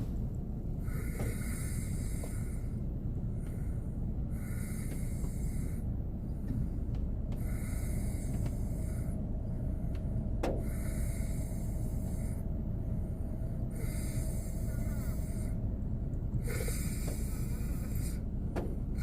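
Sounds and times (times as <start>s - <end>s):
low rumble: 0.0s - 19.0s
man snoring: 16.4s - 18.2s.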